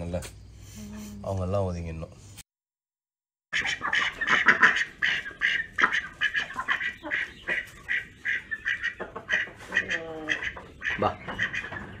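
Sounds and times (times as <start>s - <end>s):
duck quacking: 3.5s - 12.0s.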